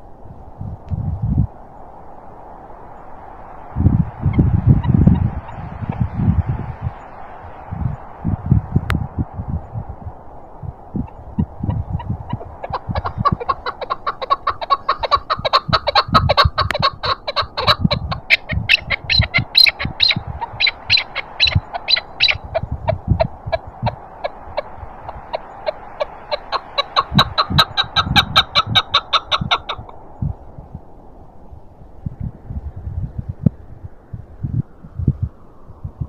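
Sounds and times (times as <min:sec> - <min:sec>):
wind gusts rumbling: 0:00.0 - 0:36.0
partridge clucking calls: 0:11.0 - 0:30.0.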